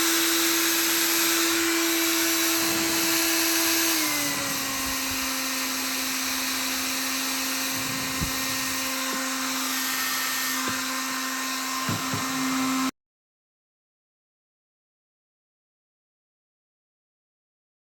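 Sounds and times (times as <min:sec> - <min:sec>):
hair dryer running: 0:00.0 - 0:12.9.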